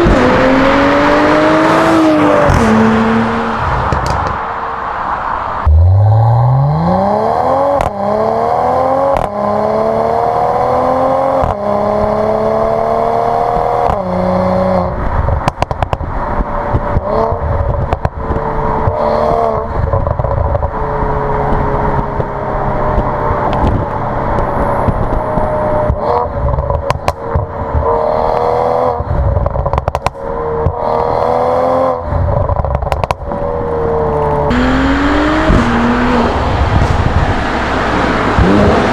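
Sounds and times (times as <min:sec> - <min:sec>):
car engine accelerating hard: 0:00.0 - 0:15.1, 0:33.6 - 0:38.9
exhaust crackles and pops: 0:03.8 - 0:04.5, 0:15.1 - 0:19.0, 0:34.5 - 0:38.9.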